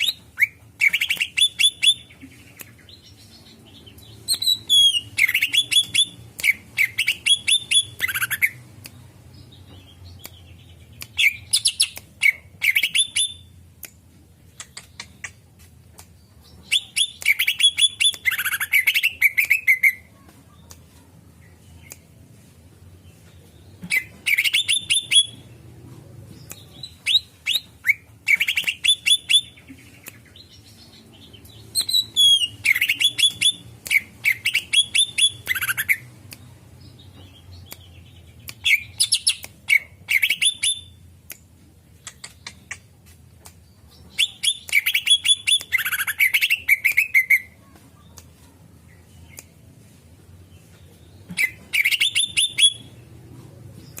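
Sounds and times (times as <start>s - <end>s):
bird chattering song: 0.0s - 13.7s, 14.4s - 22.5s, 23.1s - 25.7s, 26.3s - 41.1s, 41.9s - 49.6s, 50.4s - 54.0s.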